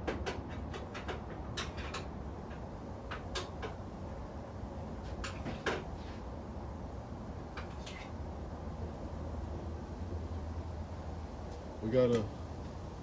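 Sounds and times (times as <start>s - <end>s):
hand tools clicking and knocking: 0.0s - 3.8s.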